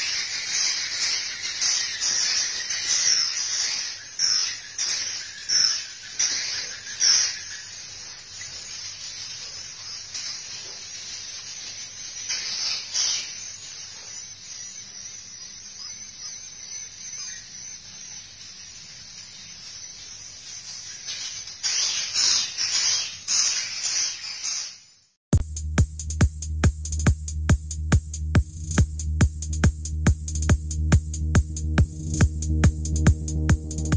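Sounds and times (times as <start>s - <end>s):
swiftlets twittering: 0.0s - 10.6s
electronic dance music: 25.3s - 33.9s.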